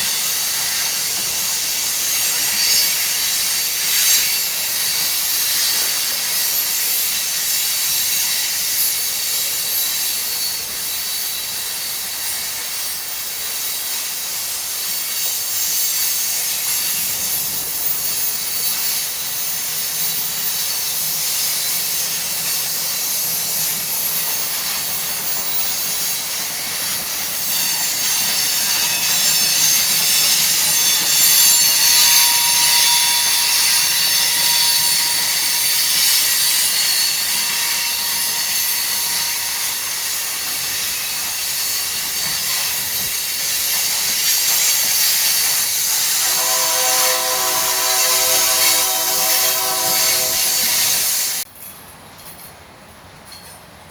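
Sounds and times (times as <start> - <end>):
train wheels rushing on rail: 0.0 - 53.9
high wheel squeal: 14.8 - 51.5.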